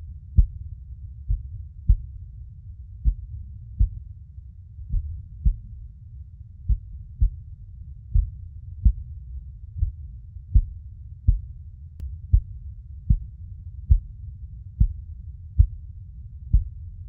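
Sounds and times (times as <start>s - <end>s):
continuous low rumble: 0.0s - 17.0s
heartbeat thumps: 0.3s - 2.2s, 3.0s - 4.0s, 4.8s - 5.8s, 6.7s - 7.5s, 8.1s - 9.1s, 9.8s - 11.6s, 12.3s - 14.1s, 14.8s - 15.8s, 16.5s - 16.8s.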